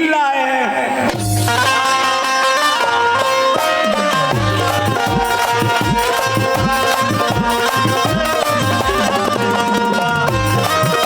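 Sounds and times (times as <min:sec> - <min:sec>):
tabla bass strokes: 0:01.1 - 0:11.0
sustained melody line: 0:01.2 - 0:11.0.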